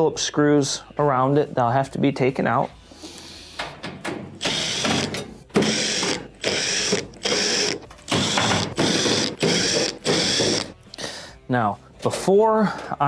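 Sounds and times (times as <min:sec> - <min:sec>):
screwdriver rattling out screws: 0:03.6 - 0:10.7.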